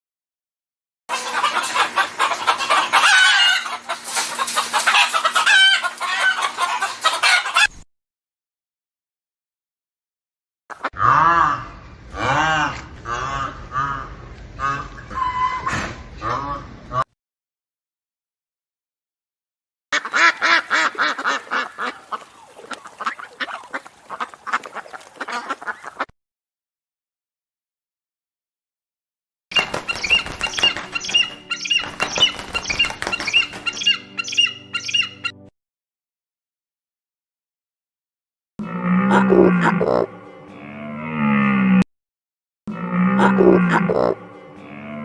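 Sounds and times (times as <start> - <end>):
chickens clucking and calling: 1.1 - 7.8, 20.0 - 26.1, 29.5 - 35.5
duck quacking: 1.1 - 7.8, 10.7 - 11.6, 12.2 - 15.0, 20.0 - 26.1, 43.2 - 44.2.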